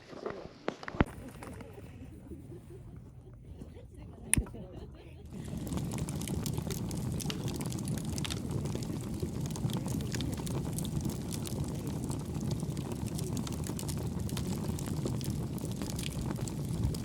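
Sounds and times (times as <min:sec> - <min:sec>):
low rumble: 0:02.2 - 0:17.0
wood fire crackling: 0:05.2 - 0:17.0.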